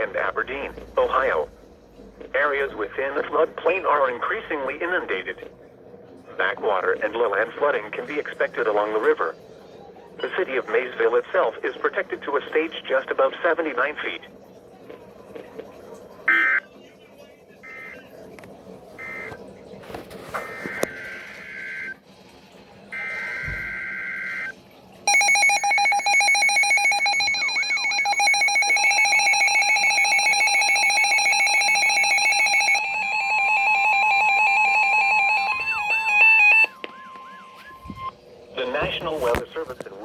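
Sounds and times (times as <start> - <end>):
rapidly pulsing electronic alarm: 17.6 - 18.0, 19.0 - 19.4, 20.4 - 22.0, 22.9 - 24.5, 25.1 - 38.2
electronic data bursts: 25.1 - 32.8
steady alert tone: 25.1 - 34.2.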